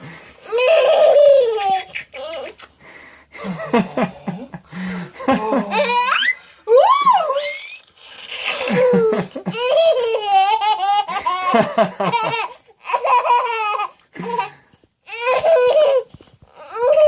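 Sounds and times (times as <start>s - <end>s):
baby laughing: 0.4s - 2.6s, 5.3s - 6.4s, 8.4s - 17.0s.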